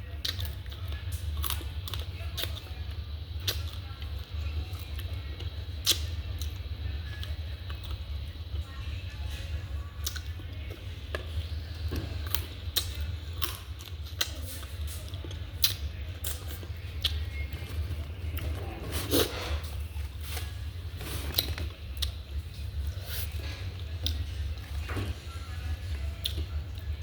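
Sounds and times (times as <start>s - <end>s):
chewing and handling food: 0.0s - 27.0s
steady low hum: 0.0s - 27.0s.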